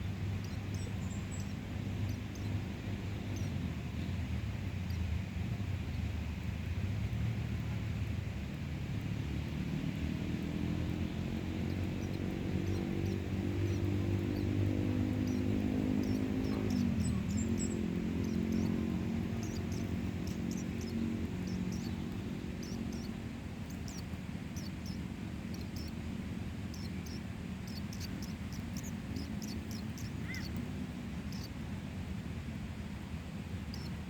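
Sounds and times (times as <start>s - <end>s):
nestling birds peeping: 0.0s - 5.9s, 7.1s - 31.6s, 33.6s - 34.0s
low engine hum: 0.0s - 34.0s.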